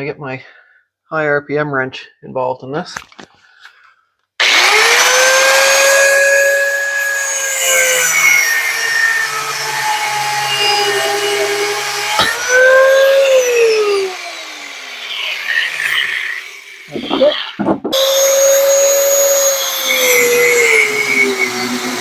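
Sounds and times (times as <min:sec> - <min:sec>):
angle grinder cutting metal: 0:04.4 - 0:22.0.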